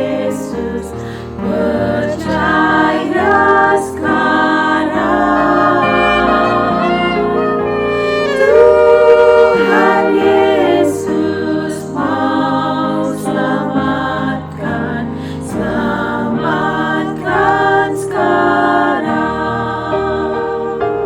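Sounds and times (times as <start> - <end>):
vocal group singing a hymn: 0.0 - 21.0.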